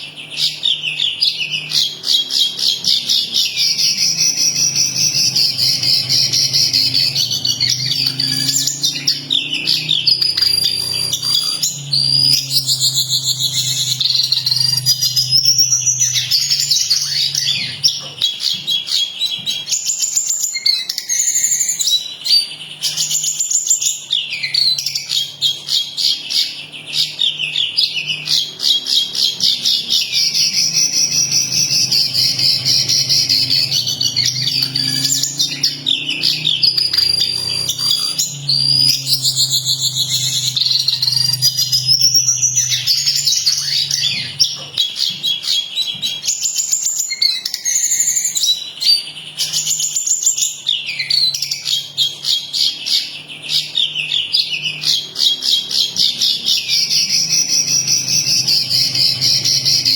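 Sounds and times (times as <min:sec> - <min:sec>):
songbird trilling: 0:00.0 - 0:19.2, 0:24.9 - 0:48.7, 0:50.9 - 0:59.9
low hum: 0:03.5 - 0:18.1, 0:30.0 - 0:44.7, 0:56.7 - 0:59.9.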